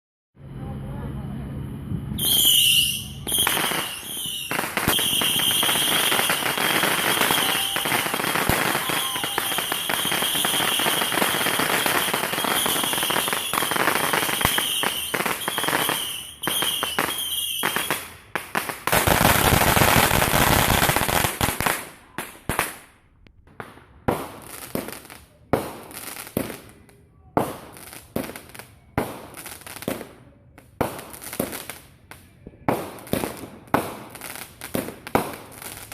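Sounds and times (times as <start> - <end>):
hissing spray of fireworks: 2.1 - 22.8
high whistle: 2.2 - 11.0
fireworks crackling: 2.2 - 35.9.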